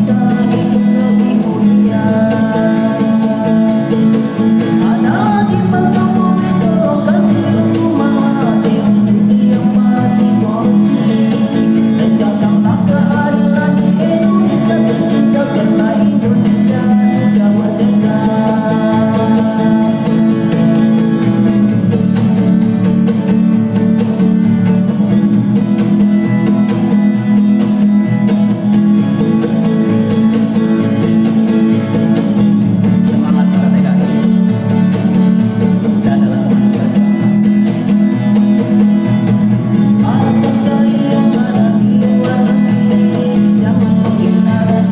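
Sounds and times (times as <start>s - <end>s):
man singing: 0.0s - 21.7s, 31.6s - 37.8s, 39.7s - 44.9s
strummed acoustic guitar: 0.0s - 44.9s.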